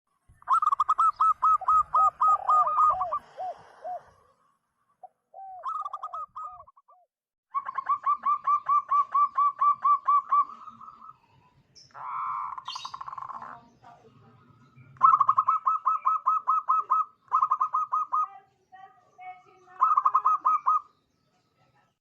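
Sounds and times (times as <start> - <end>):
dove cooing: 0.5 - 4.2, 5.0 - 11.2, 15.0 - 18.3, 19.8 - 20.9.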